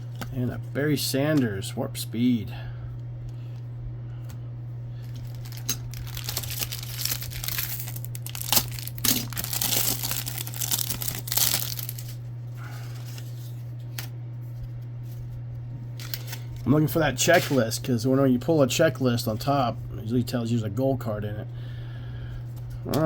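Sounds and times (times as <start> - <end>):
low hum: 0.0 - 23.0
wrapper tearing and crinkling: 5.0 - 12.3.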